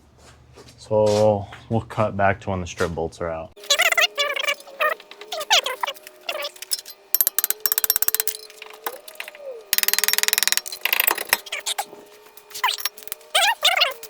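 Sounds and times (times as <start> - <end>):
metal tools clinking: 5.7 - 11.8, 12.5 - 13.5
ratchet wrench clicking: 7.2 - 9.1, 9.8 - 11.5.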